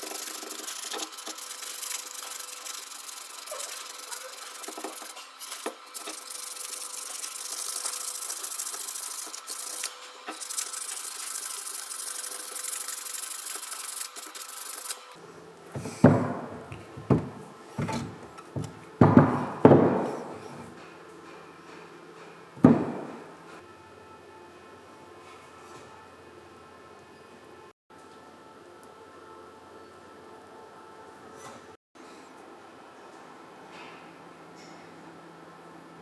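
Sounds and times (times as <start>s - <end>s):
abrasive rubbing: 0.0s - 15.2s
parts knocking and clunking: 15.7s - 21.9s.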